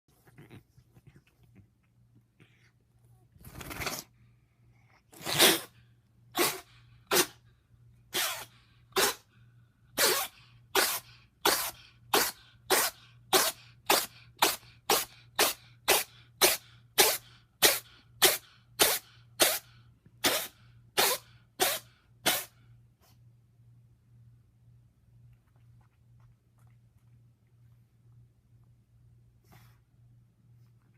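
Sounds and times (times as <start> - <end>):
cat sneezing: 3.5 - 4.2, 5.1 - 7.5, 8.1 - 9.3, 10.0 - 23.2.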